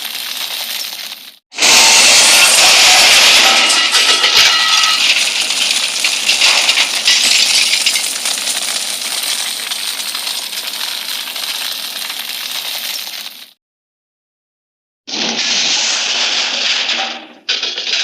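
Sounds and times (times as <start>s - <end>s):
small hard objects rattling: 0.0s - 13.6s.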